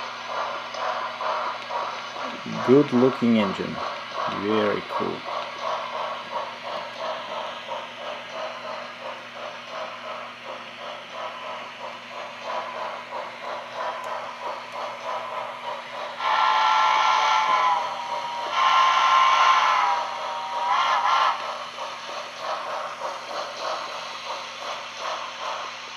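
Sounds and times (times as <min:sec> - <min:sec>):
model steam locomotive chuffing: 0:00.0 - 0:25.9
train whistle blasts: 0:16.2 - 0:17.9, 0:18.5 - 0:20.1.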